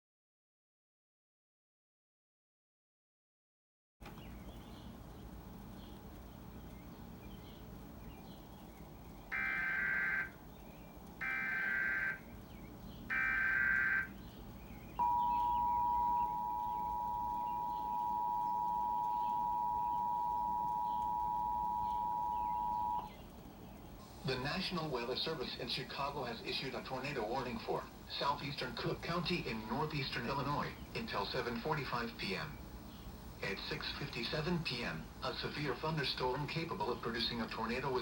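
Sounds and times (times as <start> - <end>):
two-tone attention signal: 15.0 - 23.1.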